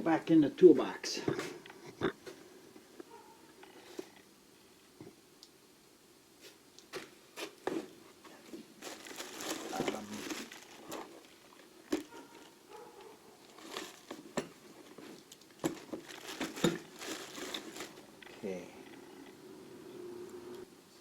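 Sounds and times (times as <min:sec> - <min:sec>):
rustling: 0:06.4 - 0:19.4.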